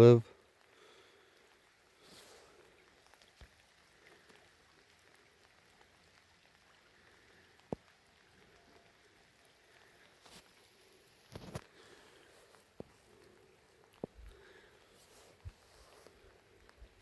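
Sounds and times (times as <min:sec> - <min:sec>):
light rain pattering: 0:00.0 - 0:17.0.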